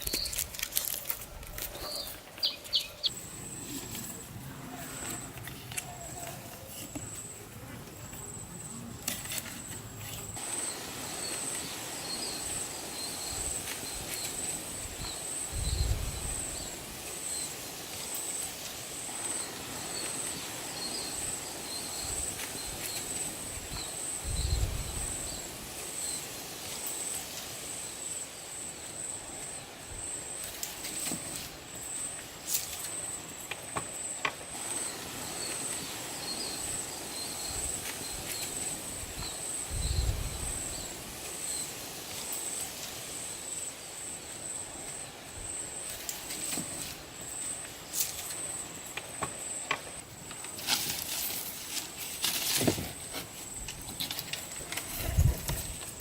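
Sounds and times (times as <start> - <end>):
insect trilling: 1.6 - 3.3.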